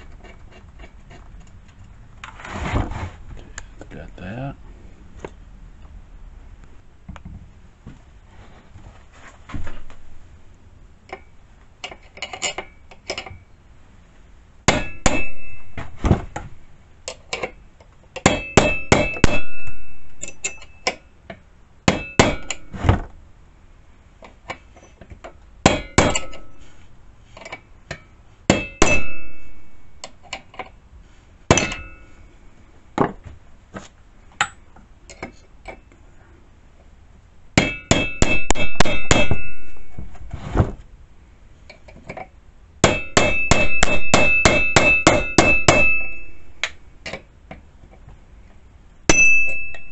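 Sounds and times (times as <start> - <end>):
hammer striking steel: 14.7 - 15.8, 18.2 - 21.0, 21.9 - 22.7, 25.7 - 26.6, 27.9 - 29.7, 31.5 - 32.0, 37.6 - 40.1, 42.8 - 46.8, 49.1 - 49.9.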